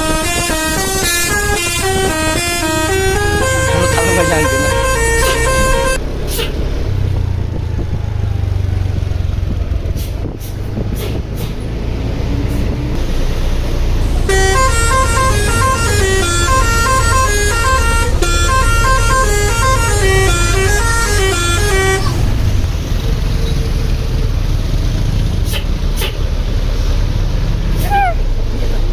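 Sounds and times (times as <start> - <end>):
multi-tone bus horn melody: 0.0 - 6.0, 14.2 - 22.7
bus engine rumbling: 0.0 - 28.9.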